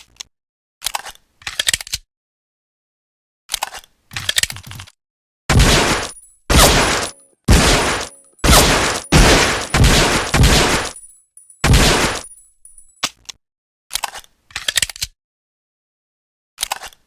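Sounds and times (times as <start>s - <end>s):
pistol shots echoing: 5.5s - 12.3s.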